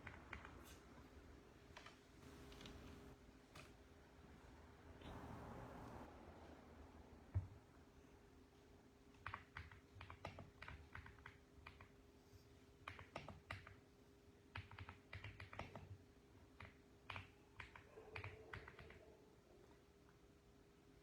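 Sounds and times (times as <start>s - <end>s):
mechanical keyboard typing: 0.0s - 0.8s, 9.2s - 11.9s, 12.8s - 13.8s, 14.5s - 19.0s
faint steady hum: 0.0s - 21.0s.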